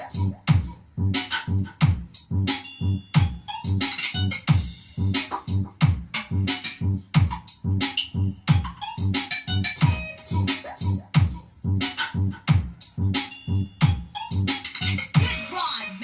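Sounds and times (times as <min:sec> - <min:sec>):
heavy bass kicks: 0:00.3 - 0:02.5, 0:04.5 - 0:08.8.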